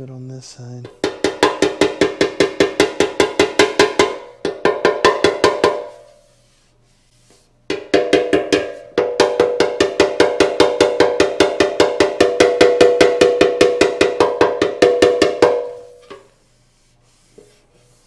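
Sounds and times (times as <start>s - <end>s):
hammer tapping on steel tank: 0.8s - 6.1s, 7.7s - 16.3s.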